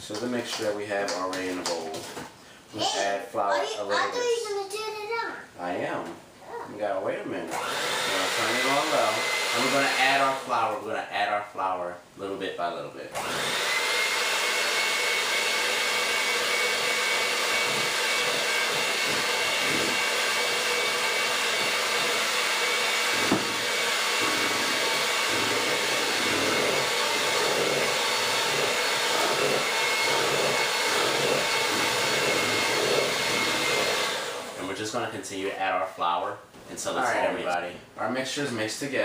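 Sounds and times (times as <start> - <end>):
electric hand mixer whining: 7.5 - 10.7, 13.2 - 34.7
brief knock: 23.3 - 23.5.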